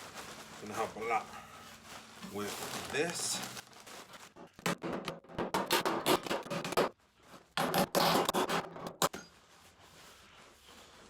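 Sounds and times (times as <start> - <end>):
tool scratching sheet metal: 4.6 - 6.9, 7.6 - 9.3.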